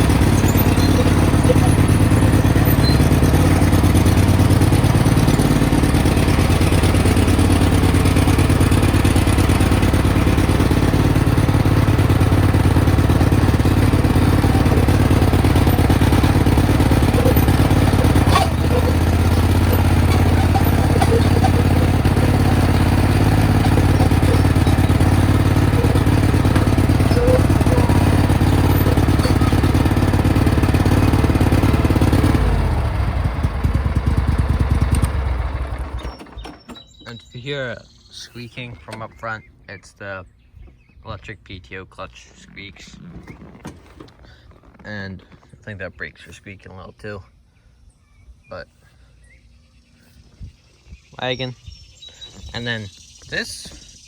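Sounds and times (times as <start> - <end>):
garden tractor engine running: 0.0 - 39.4, 41.6 - 46.8.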